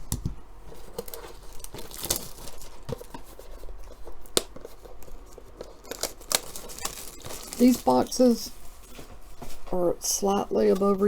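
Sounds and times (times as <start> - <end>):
cardboard and plastic wrapping torn open: 0.8 - 9.0.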